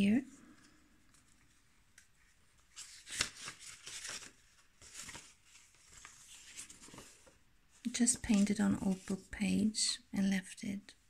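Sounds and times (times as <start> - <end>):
paper rustling: 1.1 - 9.4.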